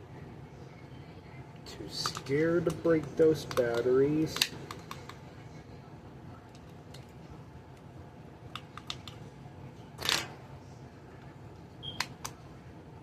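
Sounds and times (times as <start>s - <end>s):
clicks and taps handling batteries: 2.0s - 5.2s, 8.5s - 9.2s.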